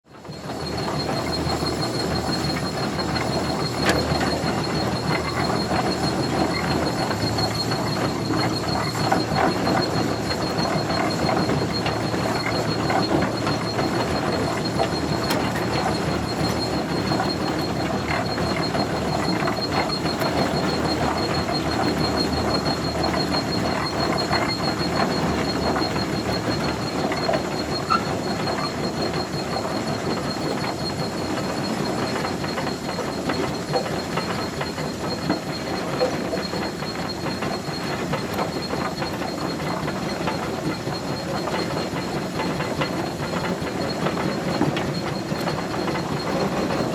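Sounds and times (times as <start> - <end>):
tractor engine running: 0.1 - 46.9
mechanical rattling and clattering: 0.2 - 46.9.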